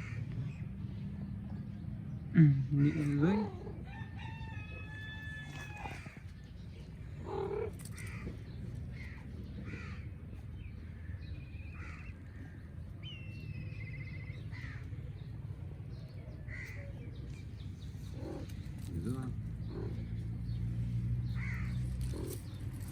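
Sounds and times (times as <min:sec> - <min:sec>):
animal calls and chirps: 0:04.7 - 0:22.9.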